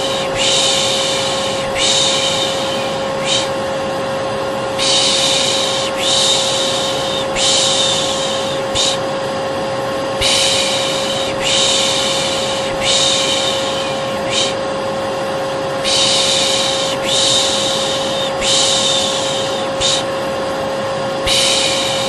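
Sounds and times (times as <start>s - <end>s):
person shushing: 0.0s - 3.7s, 4.7s - 9.1s, 10.2s - 14.7s, 15.8s - 20.1s, 21.2s - 22.0s
vacuum cleaner running: 0.0s - 22.0s.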